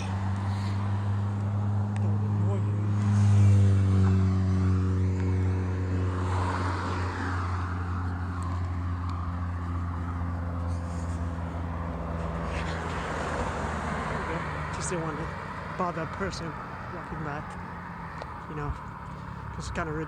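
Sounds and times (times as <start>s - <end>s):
vehicle passing swish: 0.0s - 15.8s
low engine drone: 0.0s - 20.0s.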